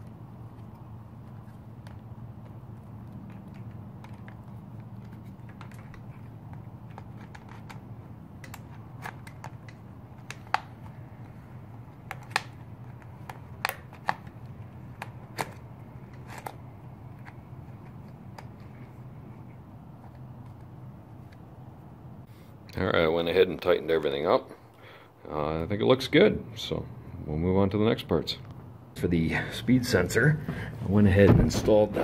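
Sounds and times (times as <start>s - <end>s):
steady low hum: 0.0s - 32.0s
plastic and metal parts clicking: 0.6s - 11.3s.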